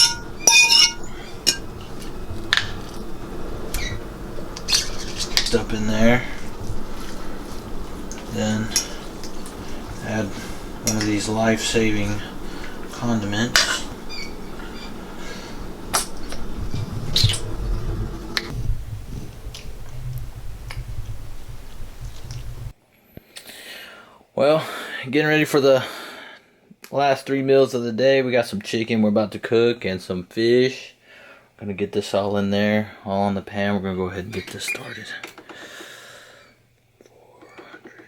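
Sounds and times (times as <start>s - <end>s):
utensil clinking against dishes: 0.0s - 3.0s, 8.0s - 16.4s
low rumble: 0.0s - 22.7s.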